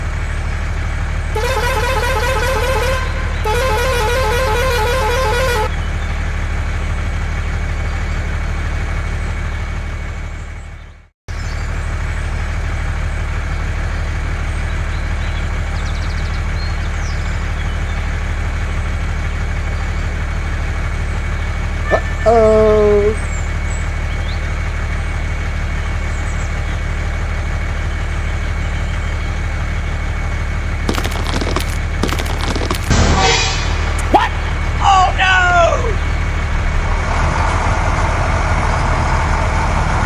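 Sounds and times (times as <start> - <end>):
warbling vehicle horn blasts: 1.3 - 5.7, 32.1 - 34.7.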